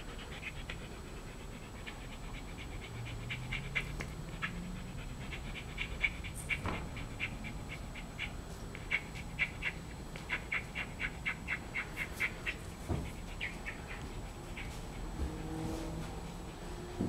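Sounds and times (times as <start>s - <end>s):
animal panting: 0.0s - 17.0s.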